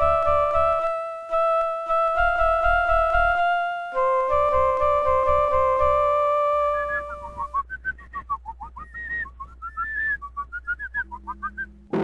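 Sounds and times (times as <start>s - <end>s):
electronic keyboard chord: 0.0s - 7.4s
pulsing low beat: 11.0s - 12.0s.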